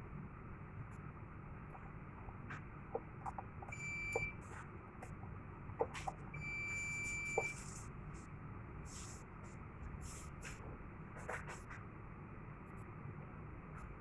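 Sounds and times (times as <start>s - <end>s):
alarm panel buzzer beeps: 3.7s - 4.4s, 6.4s - 7.6s.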